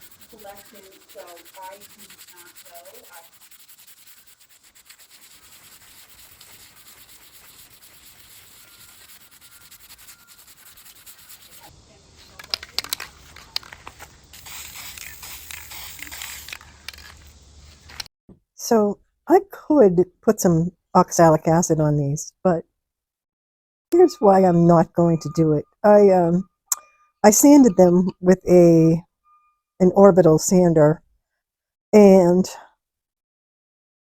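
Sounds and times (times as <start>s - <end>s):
rubbing and scraping on wood: 0.0s - 18.1s
sharp scratches: 0.0s - 18.1s.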